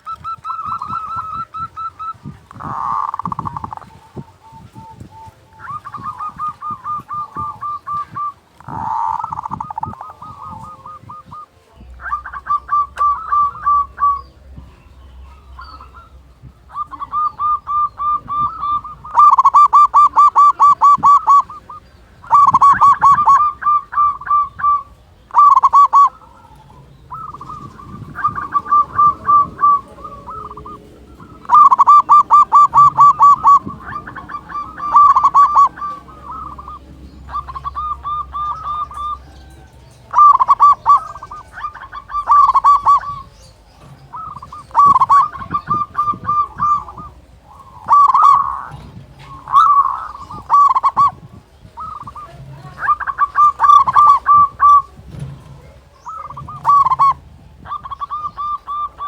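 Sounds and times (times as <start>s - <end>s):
dove stuttering cooing: 0.0s - 59.0s.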